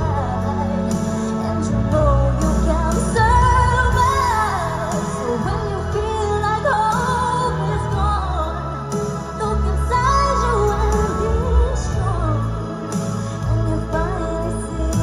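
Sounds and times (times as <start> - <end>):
pop song with singing: 0.0 - 15.0
steady bass line: 0.0 - 15.0.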